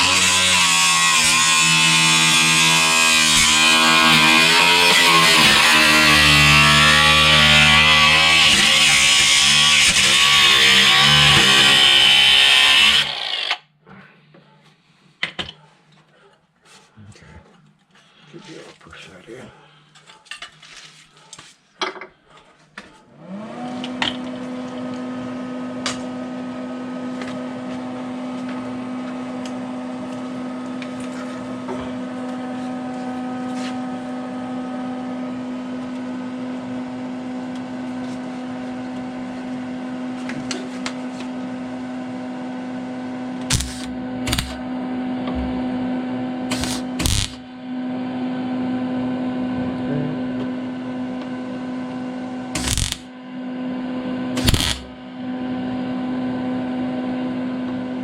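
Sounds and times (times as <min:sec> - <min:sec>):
electric motor humming: 0:43.4 - 0:47.5, 0:49.7 - 0:53.1, 0:54.2 - 0:56.2.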